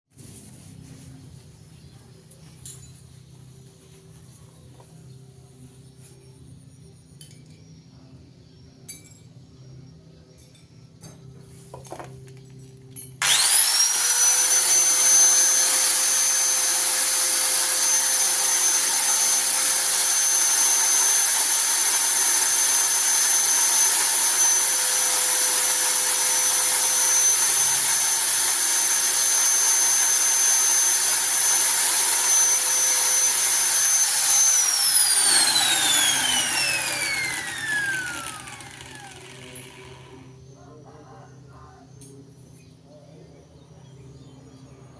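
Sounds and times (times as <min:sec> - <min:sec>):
power tool motor whining: 0:13.2 - 0:40.6.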